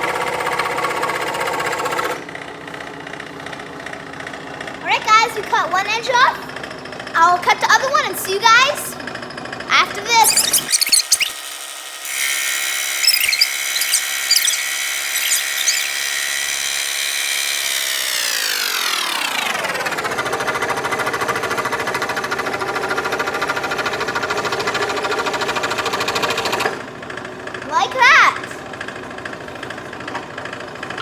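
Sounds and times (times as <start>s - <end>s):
scroll saw running: 10.2s - 20.0s.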